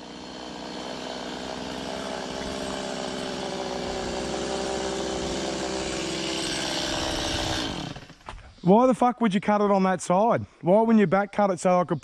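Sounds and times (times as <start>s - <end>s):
chainsaw engine at high revs: 0.0s - 8.4s.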